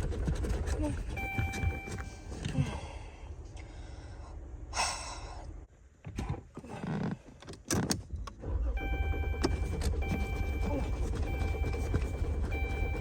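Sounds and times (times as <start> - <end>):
car engine cranking: 6.6 - 13.0.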